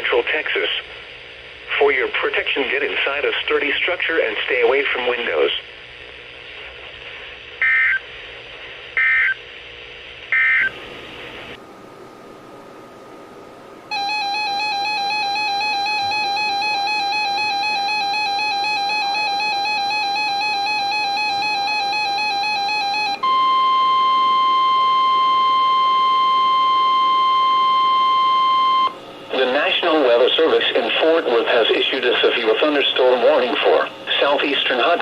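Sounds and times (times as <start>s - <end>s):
steady warning alarm tone: 10.3s - 10.8s, 13.9s - 35.0s
warbling alert tone: 13.9s - 26.0s.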